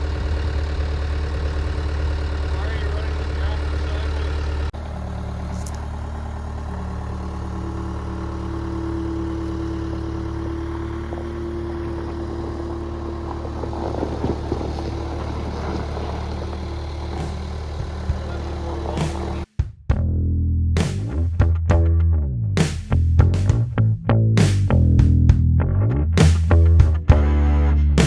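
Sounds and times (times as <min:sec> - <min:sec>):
engine idling: 0:00.0 - 0:19.5.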